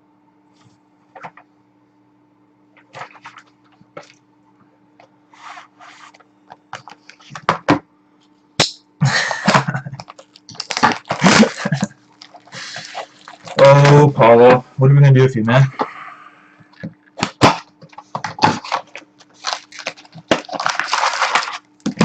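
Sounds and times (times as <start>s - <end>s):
electrical hum: 0.0s - 22.0s
wrapper crinkling and rustling: 9.9s - 14.2s, 17.2s - 22.0s.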